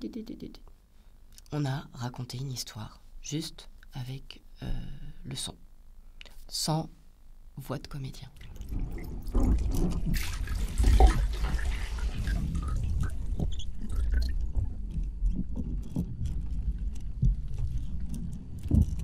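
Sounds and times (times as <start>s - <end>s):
water splashing: 8.4s - 15.8s
water dripping: 8.4s - 19.0s.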